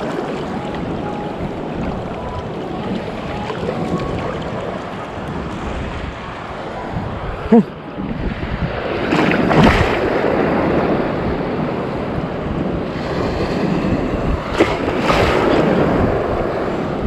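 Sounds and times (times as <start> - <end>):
surf breaking on beach: 0.0 - 17.0
wind buffeting microphone: 0.0 - 17.0.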